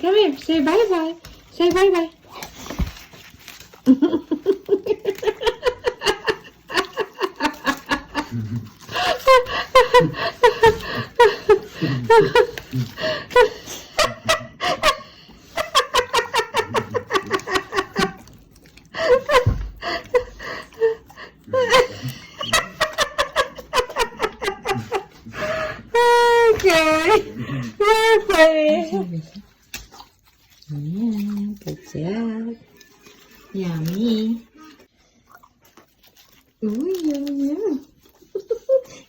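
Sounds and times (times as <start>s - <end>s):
woman laughing hard: 3.9s - 18.2s, 19.0s - 28.3s.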